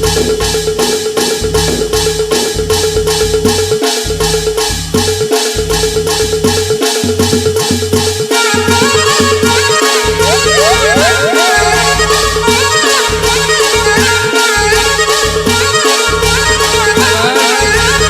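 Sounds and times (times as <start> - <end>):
hand drums beating fast rhythm: 0.0 - 18.0
stepping bass line: 0.0 - 18.0
held drone tone: 9.0 - 18.0
melody line: 9.1 - 14.0.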